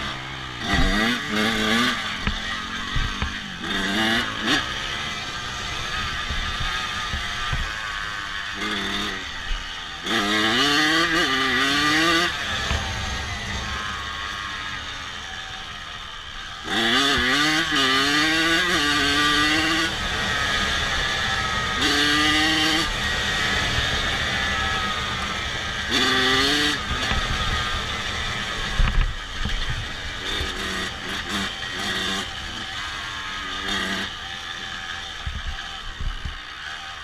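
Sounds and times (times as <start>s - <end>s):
motorcycle engine idling: 0.1s - 10.1s.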